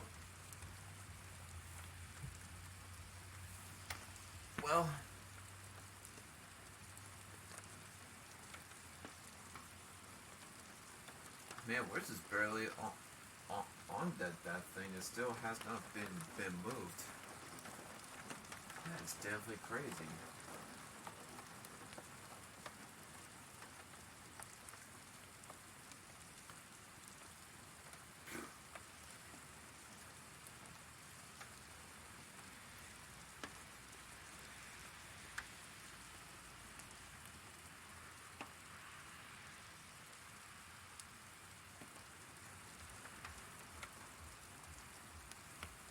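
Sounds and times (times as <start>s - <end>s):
rain falling: 0.0s - 45.9s
raindrops ticking: 0.0s - 45.9s
drops ticking on a surface: 41.8s - 45.9s.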